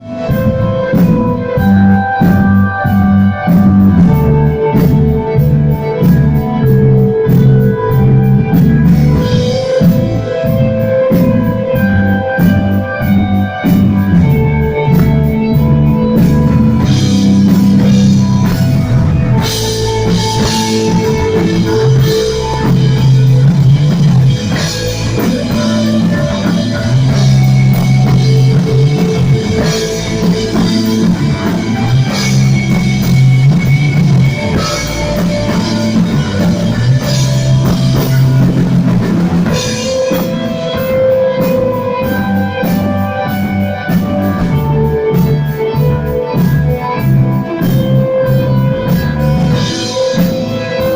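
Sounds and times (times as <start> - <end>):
bass: 0.0 - 50.9
drum kit: 0.0 - 50.9
electric guitar: 0.0 - 50.9.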